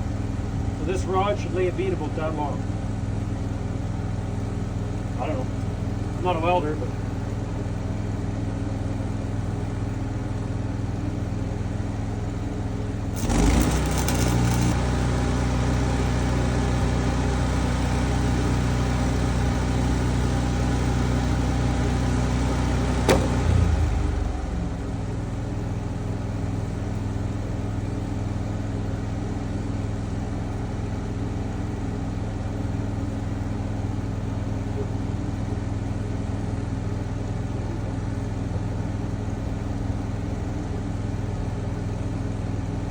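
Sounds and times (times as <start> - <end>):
engine running steadily: 0.0 - 42.9
welding arc crackling hiss: 13.2 - 15.0.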